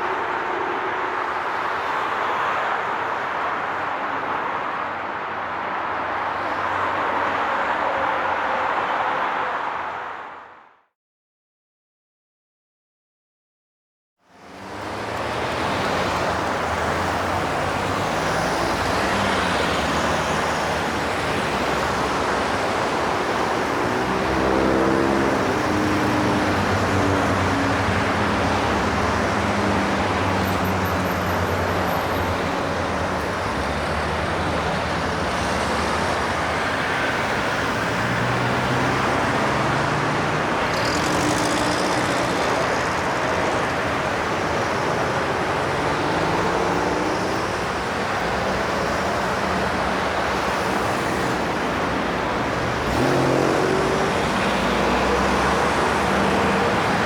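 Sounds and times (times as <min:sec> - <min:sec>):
highway traffic rushing: 0:00.0 - 0:10.8, 0:14.2 - 0:57.0
heavy vehicle engine passing: 0:14.6 - 0:57.0.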